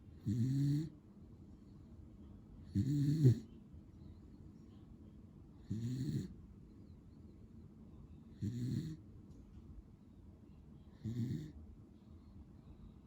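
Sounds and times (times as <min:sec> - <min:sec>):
dog snoring: 0:00.1 - 0:01.0, 0:02.7 - 0:03.5, 0:05.6 - 0:06.4, 0:08.4 - 0:09.0, 0:10.9 - 0:11.6.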